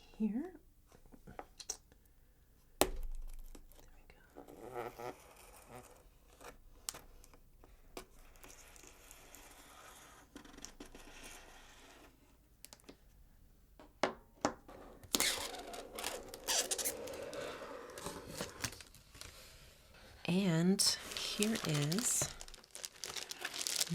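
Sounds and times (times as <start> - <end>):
cardboard tearing and scraping: 15.1 - 19.3, 21.0 - 23.9.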